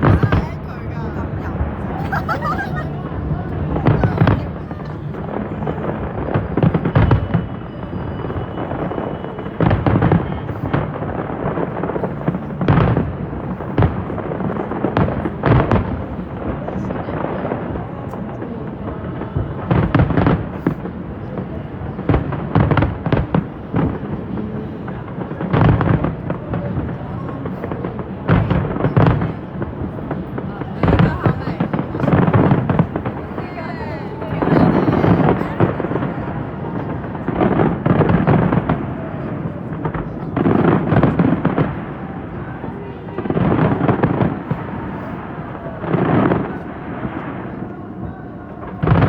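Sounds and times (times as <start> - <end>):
continuous rumbling: 0.0 - 49.0.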